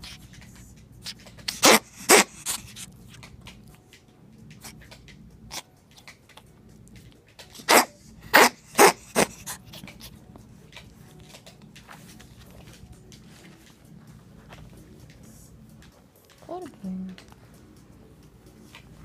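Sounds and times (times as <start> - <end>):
ferret coughing: 1.5 - 2.6, 7.6 - 9.6.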